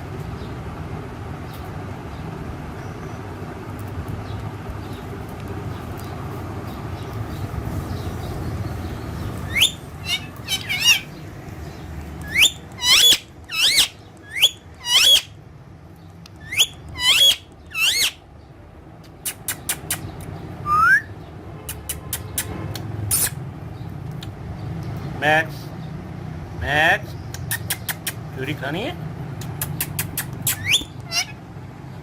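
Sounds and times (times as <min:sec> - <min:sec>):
parrots screeching: 0:09.3 - 0:11.2, 0:12.2 - 0:15.4, 0:16.4 - 0:18.2, 0:29.9 - 0:31.4
rising whistle: 0:20.7 - 0:21.1.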